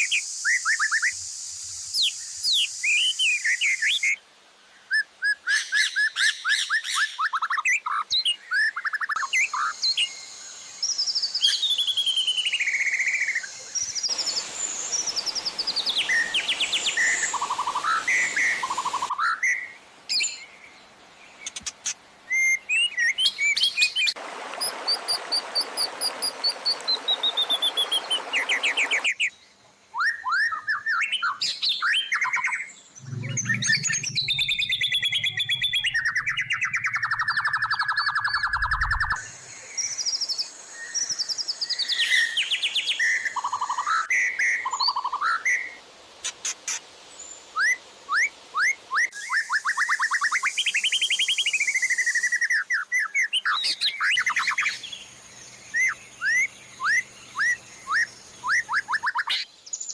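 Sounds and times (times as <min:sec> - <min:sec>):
hiss: 0:00.0 - 0:03.9
songbird chirps and trills: 0:04.9 - 0:59.9
low hum: 0:32.9 - 0:37.6.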